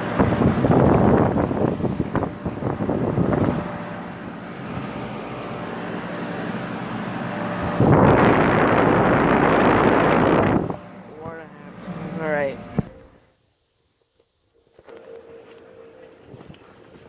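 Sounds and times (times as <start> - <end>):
wind rushing over microphone: 0.0 - 4.0, 7.4 - 11.4
heat pump units humming: 0.0 - 13.5, 14.1 - 17.0.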